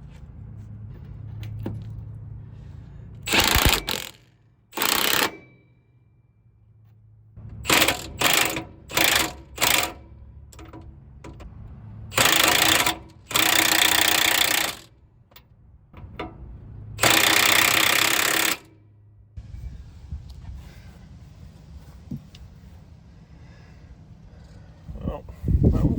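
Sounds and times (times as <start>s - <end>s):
impact wrench bursts: 3.2s - 5.6s, 7.5s - 10.2s, 12.1s - 15.0s, 17.0s - 18.8s.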